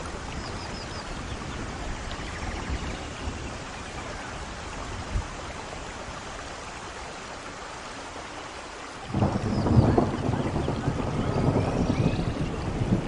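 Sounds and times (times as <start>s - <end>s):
steady rain falling: 0.0s - 13.0s
low thunder rumble: 9.1s - 13.0s.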